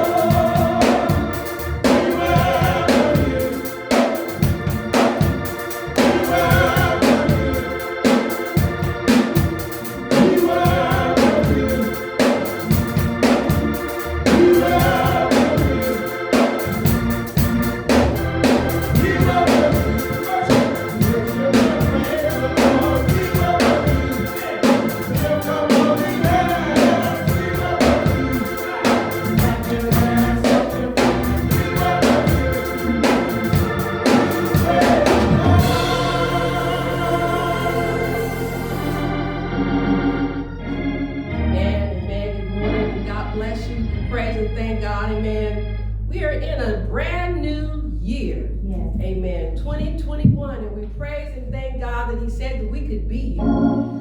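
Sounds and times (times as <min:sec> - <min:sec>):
drums: 0:00.0 - 0:39.1
people singing gospel: 0:00.0 - 0:45.8
organ: 0:00.0 - 0:48.6, 0:49.5 - 0:54.0.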